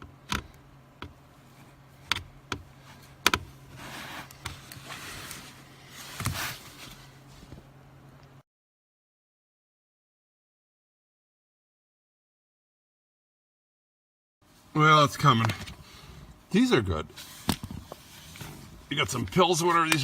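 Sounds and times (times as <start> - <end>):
scraping and rustling: 2.8 - 7.7, 17.1 - 20.0
tool clicks and knocks: 3.2 - 3.5.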